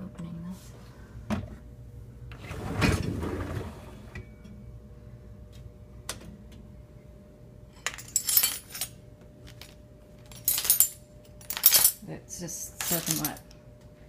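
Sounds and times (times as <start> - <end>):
dishwasher rack rolling out: 2.4 - 4.1.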